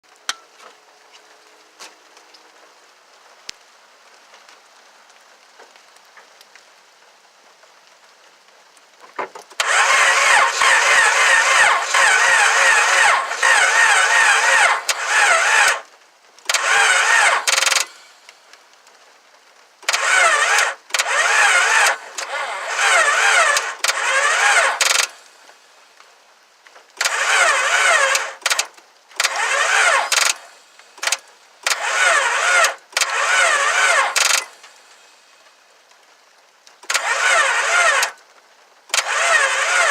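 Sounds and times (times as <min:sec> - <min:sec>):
starter motor cranking engine: 0:09.5 - 0:18.4, 0:19.8 - 0:25.7, 0:26.9 - 0:35.3, 0:36.8 - 0:38.2, 0:38.9 - 0:39.9.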